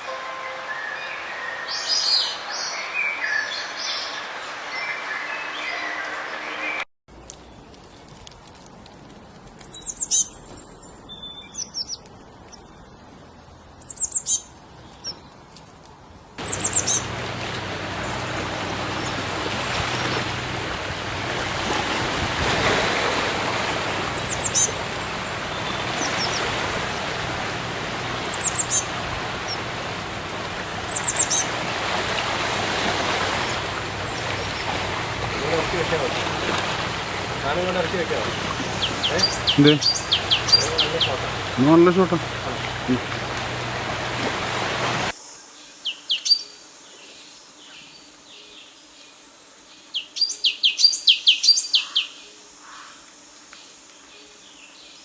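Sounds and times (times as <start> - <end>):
small birds chirping: 9.6 - 15.5, 16.4 - 19.3, 24.0 - 32.3, 33.4 - 43.4, 49.8 - 52.9
steady rushing noise: 16.4 - 45.2.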